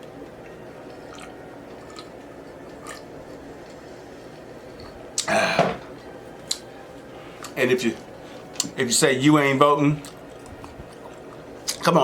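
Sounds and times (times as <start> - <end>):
steady low background noise: 0.0 - 12.0
mouth chewing: 0.4 - 3.9, 10.0 - 11.9.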